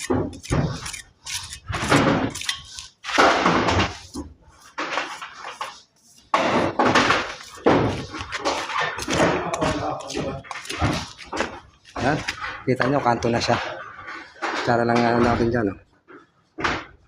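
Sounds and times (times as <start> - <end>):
trowel scraping mortar: 0.0 - 12.7.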